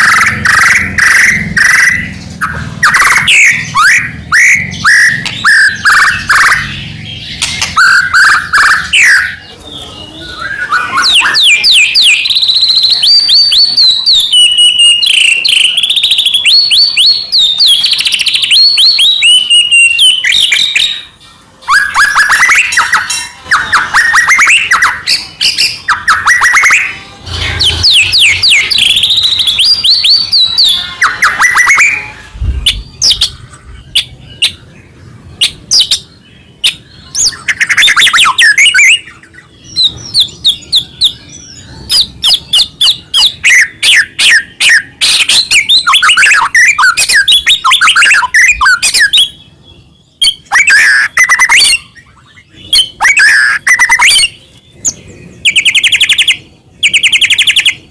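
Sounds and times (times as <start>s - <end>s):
bird singing with chirps and trills: 0.0s - 57.9s.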